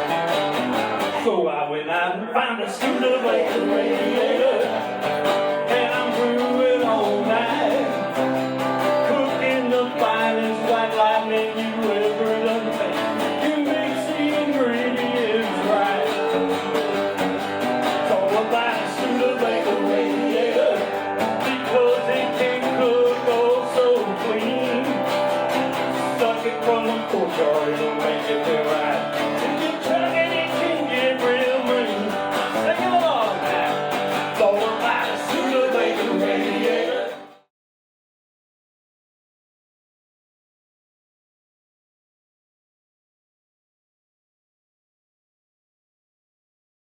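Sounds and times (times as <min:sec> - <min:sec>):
acoustic guitar strumming: 0:00.0 - 0:01.3, 0:02.3 - 0:37.4
man singing: 0:01.1 - 0:04.9, 0:05.6 - 0:08.3, 0:08.9 - 0:17.2, 0:17.9 - 0:37.3.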